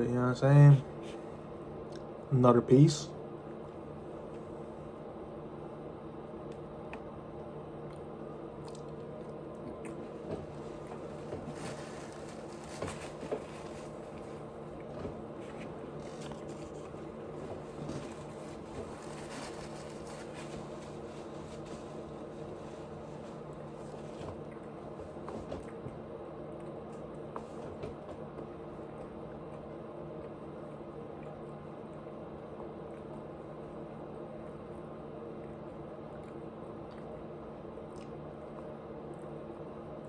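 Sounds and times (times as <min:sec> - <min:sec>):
steady low hum: 0:00.0 - 0:40.0
wet chewing with mouth clicks: 0:06.4 - 0:12.1, 0:13.3 - 0:19.0, 0:22.0 - 0:27.7, 0:34.1 - 0:39.3.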